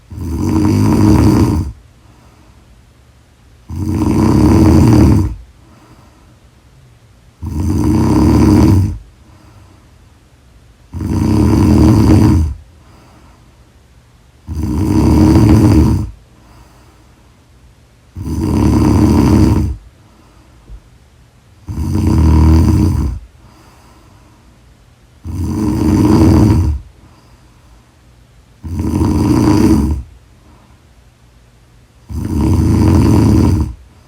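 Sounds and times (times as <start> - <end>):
woman snoring: 0.0 - 1.8, 3.6 - 5.4, 7.4 - 9.0, 10.9 - 12.6, 14.4 - 16.2, 18.2 - 19.8, 21.6 - 23.2, 25.2 - 26.9, 28.6 - 30.1, 32.0 - 33.8
quiet breathing: 0.0 - 21.0, 21.6 - 34.0.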